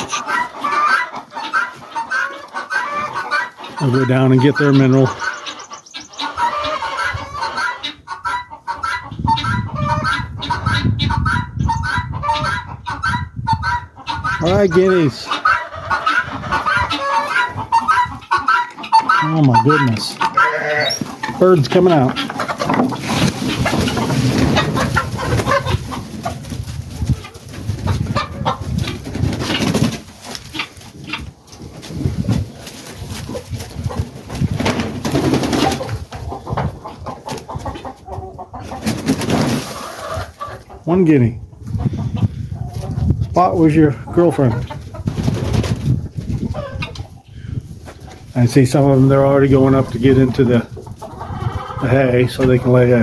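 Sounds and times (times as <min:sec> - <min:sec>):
guinea fowl calling: 0:00.0 - 0:21.2.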